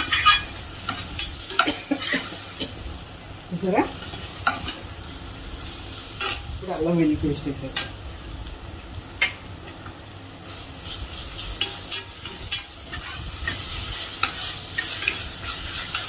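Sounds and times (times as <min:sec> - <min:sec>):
onions sizzling in hot oil: 0:00.0 - 0:16.0.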